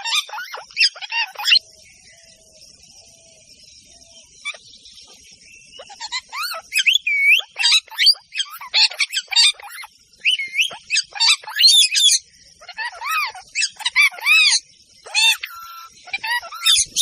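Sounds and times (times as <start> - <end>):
parrots squawking and whistling: 0.0 - 1.6, 4.4 - 4.6, 5.7 - 17.0.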